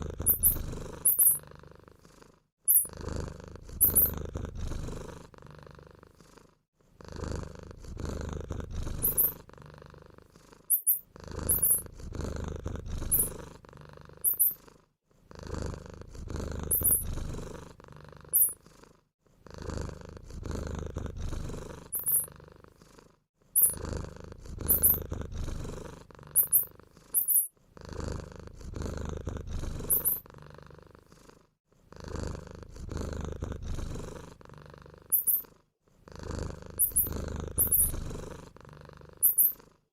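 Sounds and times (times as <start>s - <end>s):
cat purring: 0.0s - 39.9s
high-pitched squeaks: 9.0s - 9.4s, 10.7s - 11.8s, 14.3s - 14.6s, 24.7s - 25.0s, 26.4s - 27.5s, 35.2s - 35.4s, 36.8s - 37.9s, 39.2s - 39.6s.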